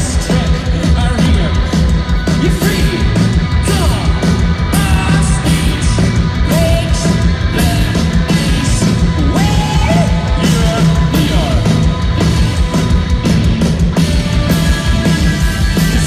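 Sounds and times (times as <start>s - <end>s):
bass: 0.0s - 16.0s
distorted electric guitars: 0.0s - 16.0s
drums: 0.0s - 16.0s
person singing: 2.4s - 11.8s.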